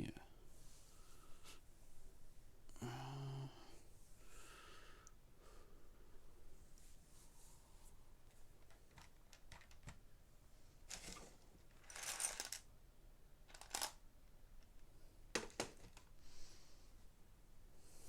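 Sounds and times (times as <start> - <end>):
plastic pieces clicking and rattling: 8.9 - 10.0, 10.9 - 12.7, 13.5 - 14.0.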